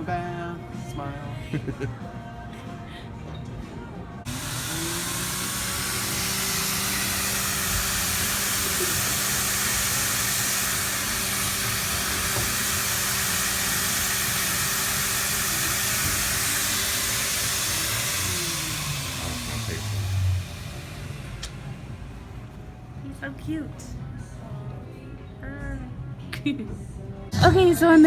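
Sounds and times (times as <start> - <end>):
motor hum: 0.0 - 24.4
air blower rushing: 4.2 - 23.0.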